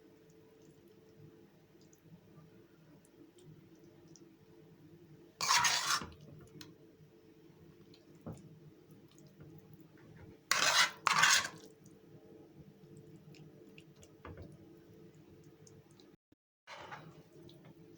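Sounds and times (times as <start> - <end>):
utensil scraping cookware: 5.4 - 6.2, 10.5 - 11.6, 16.7 - 17.1.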